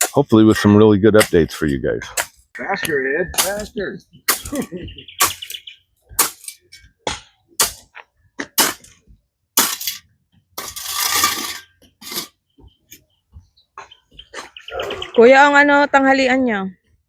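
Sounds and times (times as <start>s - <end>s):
hand tool striking hard ground: 0.0s - 13.0s.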